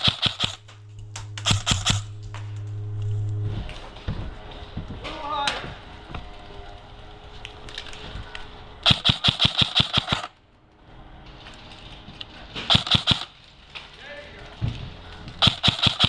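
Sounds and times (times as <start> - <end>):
airsoft rifle firing bursts: 0.0 - 0.6, 1.4 - 2.0, 8.8 - 10.3, 12.7 - 13.4, 15.4 - 16.0.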